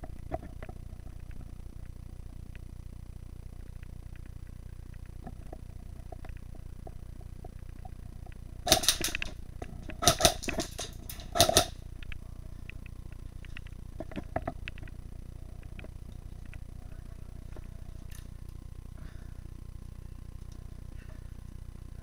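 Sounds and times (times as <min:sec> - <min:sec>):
faint scattered clicks: 0:03.6 - 0:15.0, 0:15.6 - 0:16.7, 0:20.4 - 0:20.7
airsoft gun firing bursts: 0:08.7 - 0:09.4, 0:10.0 - 0:11.8.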